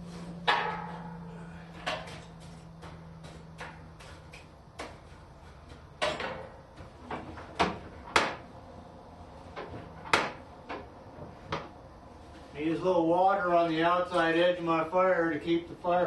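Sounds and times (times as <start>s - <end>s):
knocks and clunks at a forge: 0.4s - 8.5s, 9.5s - 11.8s.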